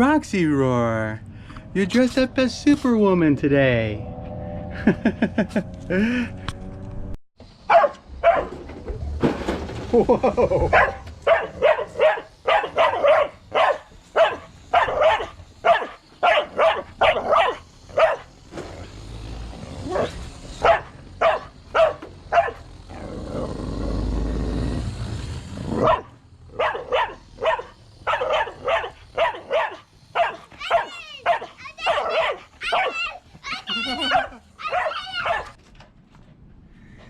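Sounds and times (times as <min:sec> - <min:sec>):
dog barking rapidly: 0:07.7 - 0:08.5, 0:10.7 - 0:18.3, 0:19.9 - 0:22.7, 0:25.8 - 0:35.6.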